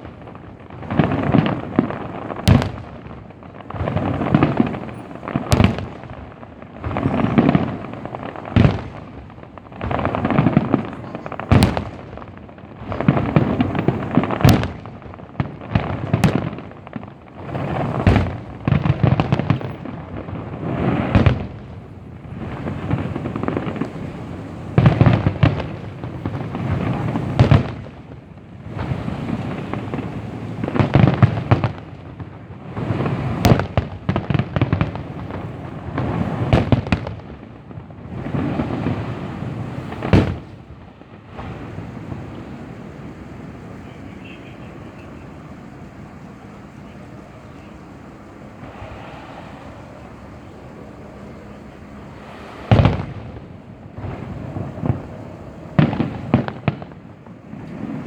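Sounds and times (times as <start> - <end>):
fireworks crackling: 0.0 - 58.0
fireworks deep booms: 0.0 - 58.0.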